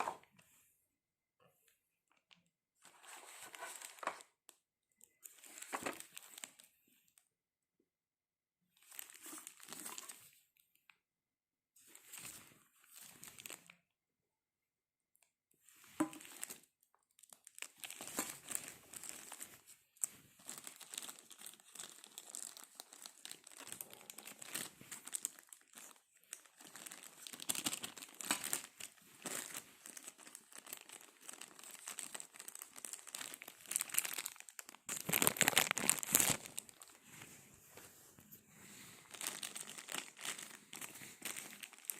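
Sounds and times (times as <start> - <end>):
packaging crinkling and tearing: 5.3 - 6.7, 8.9 - 10.2, 13.0 - 13.8, 16.0 - 19.7, 20.4 - 37.0, 39.0 - 41.9.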